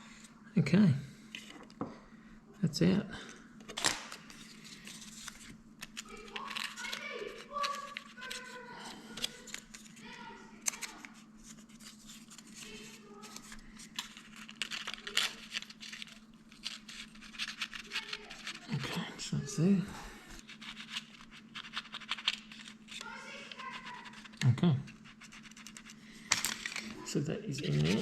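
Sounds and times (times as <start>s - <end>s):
faint steady hum: 0.0s - 28.0s
paper scratching and tearing: 4.3s - 19.0s, 20.4s - 25.9s.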